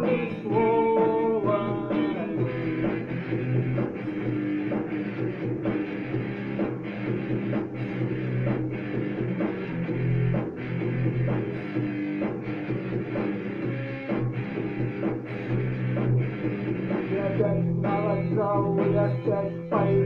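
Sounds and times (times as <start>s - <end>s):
drum kit beat: 0.0s - 20.0s
rock guitar: 0.0s - 20.0s.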